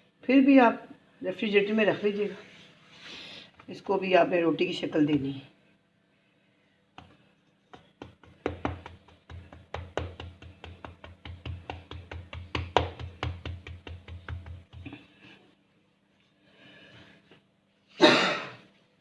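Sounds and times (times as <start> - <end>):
rolling pin knocking on board: 7.0 - 15.0.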